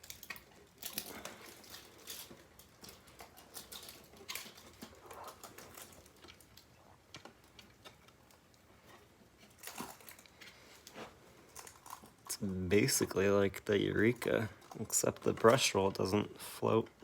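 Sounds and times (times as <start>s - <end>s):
packaging rustling and clicking: 0.0s - 8.5s.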